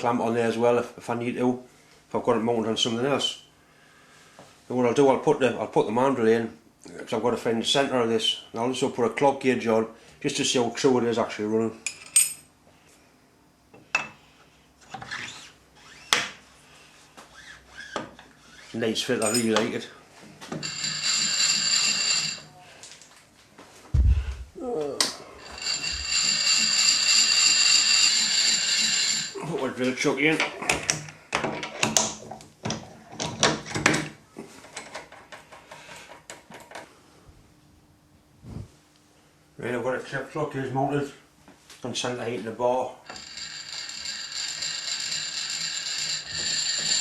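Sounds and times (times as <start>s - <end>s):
metal tools knocking and clicking: 19.2s - 19.7s
ringing metal clink: 19.2s - 19.7s.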